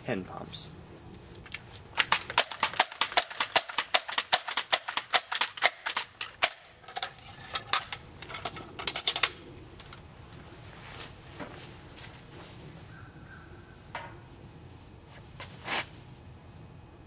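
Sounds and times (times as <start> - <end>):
air rifle pump clicking: 2.0 - 6.6.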